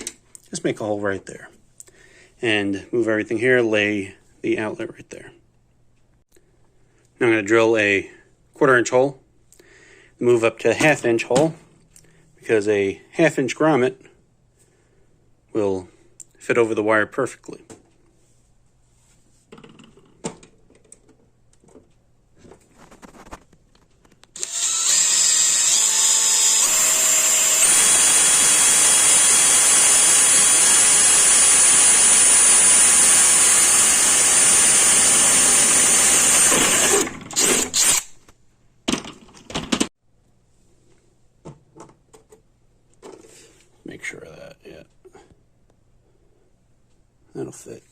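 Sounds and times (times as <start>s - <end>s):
power drill drilling metal: 24.4s - 38.2s.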